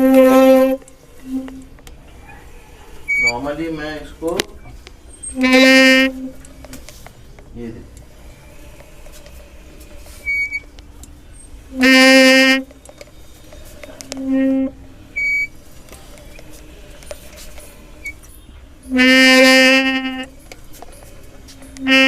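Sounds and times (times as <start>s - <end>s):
short high brake squeaks: 0.0s - 6.7s, 10.1s - 11.6s, 13.0s - 15.6s, 17.3s - 18.4s
disc brake squealing: 0.0s - 22.0s.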